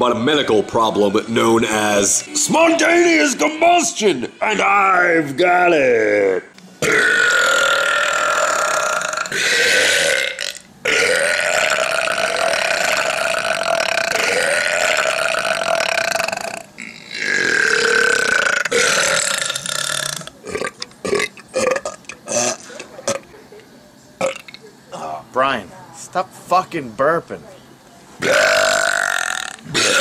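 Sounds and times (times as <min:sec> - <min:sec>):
man belching: 0:06.1 - 0:23.2, 0:24.2 - 0:25.2, 0:28.2 - 0:30.0.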